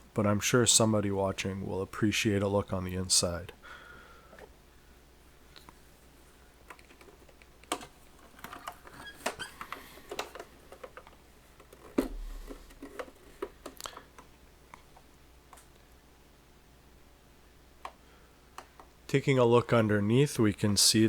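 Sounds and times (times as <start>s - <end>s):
hard objects clicking and knocking: 6.7s - 14.3s.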